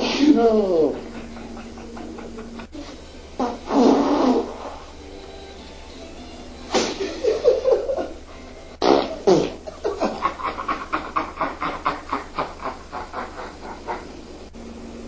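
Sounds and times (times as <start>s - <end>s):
farting: 2.8s - 5.6s, 8.8s - 10.2s.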